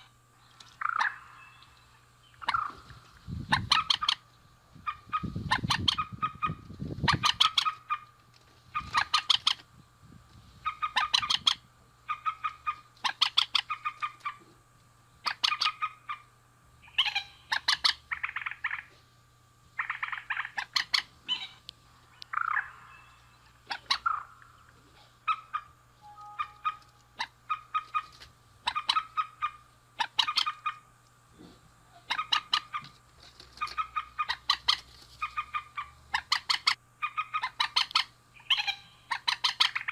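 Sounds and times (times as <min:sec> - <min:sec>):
bird harsh clucking calls: 0:00.7 - 0:09.7, 0:10.6 - 0:14.5, 0:15.2 - 0:19.0, 0:19.8 - 0:30.9, 0:31.9 - 0:39.9
bird squawking calls: 0:00.8 - 0:04.2, 0:10.6 - 0:14.4, 0:15.2 - 0:18.9, 0:19.8 - 0:21.6, 0:22.2 - 0:30.9, 0:31.9 - 0:32.9, 0:33.6 - 0:39.9.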